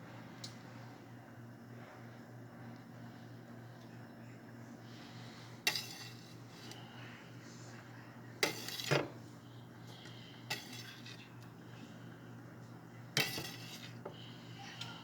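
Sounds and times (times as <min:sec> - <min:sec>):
steady low hum: 0:00.0 - 0:15.0
utensils clattering against dishes: 0:05.7 - 0:06.4, 0:08.4 - 0:09.1, 0:10.5 - 0:11.3, 0:13.2 - 0:14.0.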